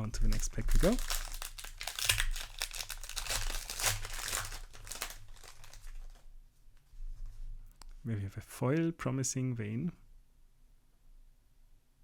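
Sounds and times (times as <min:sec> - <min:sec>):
foil wrapper tearing and crinkling: 0:00.2 - 0:06.2.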